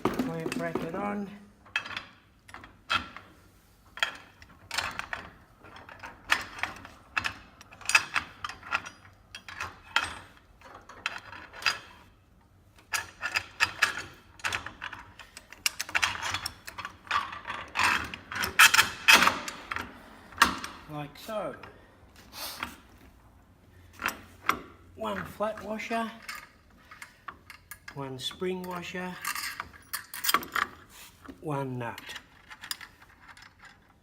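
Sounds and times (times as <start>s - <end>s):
metal hardware clinking: 0.0s - 3.0s.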